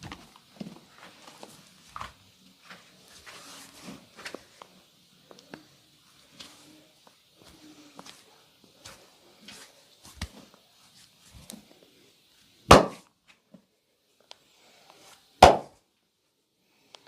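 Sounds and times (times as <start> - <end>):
loud sharp impacts: 12.7 - 13.0, 15.4 - 15.7.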